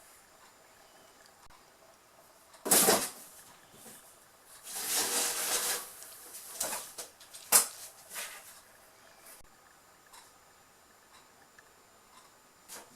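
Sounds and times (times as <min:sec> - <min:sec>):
cardboard box scraped and rustled: 0:04.7 - 0:06.4.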